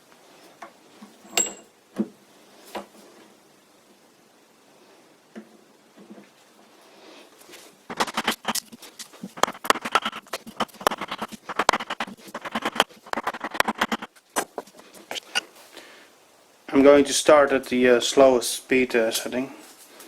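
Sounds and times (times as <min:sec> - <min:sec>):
rapid clicks and rattles: 0:07.9 - 0:15.4.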